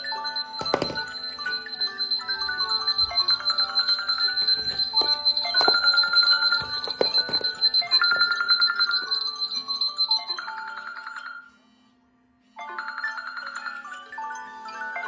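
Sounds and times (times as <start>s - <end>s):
steady high tone: 0.0s - 11.5s
electronic ringtone melodies: 0.0s - 11.6s, 12.6s - 15.0s.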